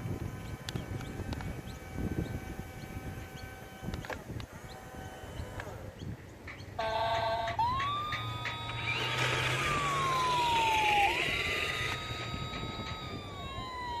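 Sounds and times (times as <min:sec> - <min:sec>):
fire engine wail siren: 0:06.8 - 0:14.0.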